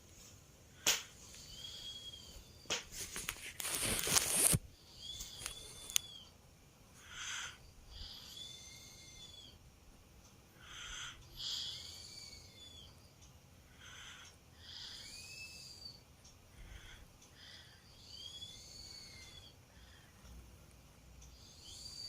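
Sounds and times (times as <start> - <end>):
toddler snoring with whistle: 7.0 - 9.6, 10.6 - 12.9, 13.8 - 16.0, 16.7 - 19.6, 21.3 - 22.0.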